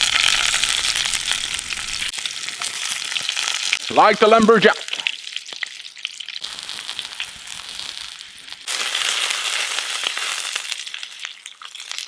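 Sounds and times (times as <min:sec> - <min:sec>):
potatoes sizzling in hot fat: 0:00.0 - 0:03.9, 0:05.0 - 0:12.0.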